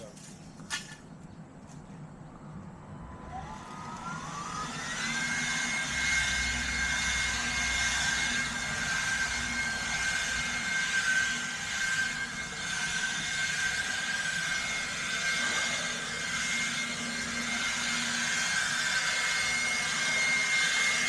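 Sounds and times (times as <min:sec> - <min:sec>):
electric blower whine: 0:02.9 - 0:21.0.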